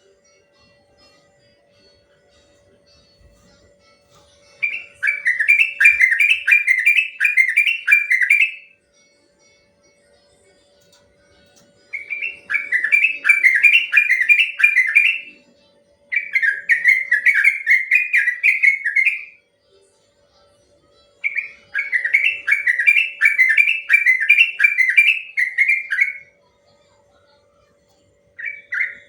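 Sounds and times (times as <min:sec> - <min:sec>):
bird singing whistled notes: 0:04.5 - 0:08.7, 0:11.8 - 0:15.4, 0:16.1 - 0:19.4, 0:21.2 - 0:26.3, 0:28.4 - 0:29.0.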